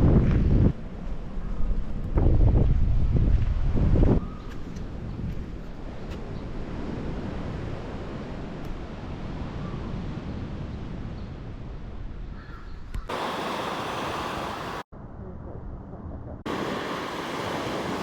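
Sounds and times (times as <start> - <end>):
wind buffeting microphone: 0.0 - 14.8
ocean surf hissing: 13.1 - 14.9, 16.5 - 18.0.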